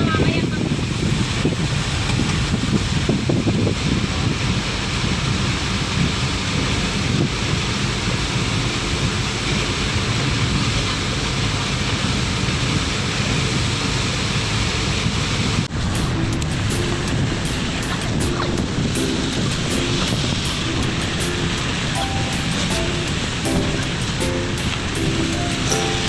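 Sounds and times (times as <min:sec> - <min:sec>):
wind buffeting microphone: 0:00.0 - 0:10.6, 0:14.9 - 0:25.6
sea surf rushing: 0:13.9 - 0:26.0
faint music: 0:15.9 - 0:26.0.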